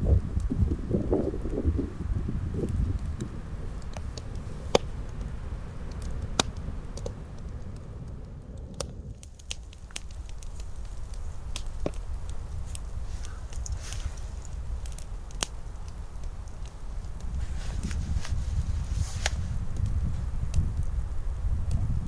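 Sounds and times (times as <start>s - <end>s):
low wind rumble: 0.0s - 22.0s
sharp clicks and snaps: 5.9s - 18.0s.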